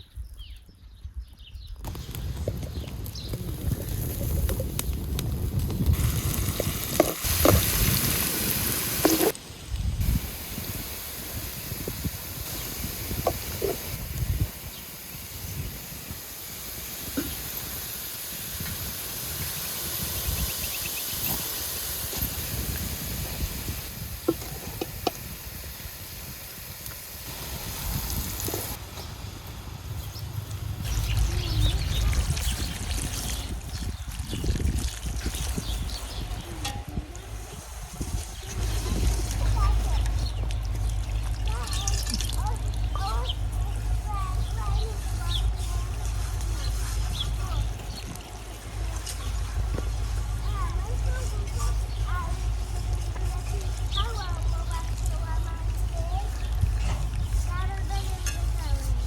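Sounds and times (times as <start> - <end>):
food sizzling over fire: 1.8 - 59.0
food sizzling in a pan: 5.6 - 9.4, 10.0 - 28.8.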